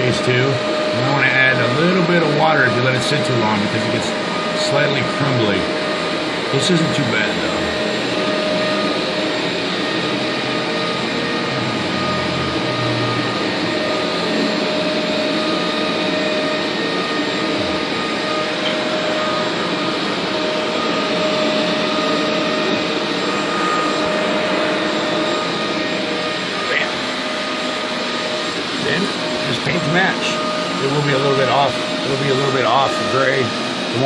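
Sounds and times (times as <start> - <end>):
loud motor drone: 0.0 - 34.0
faint high whine: 10.6 - 34.0.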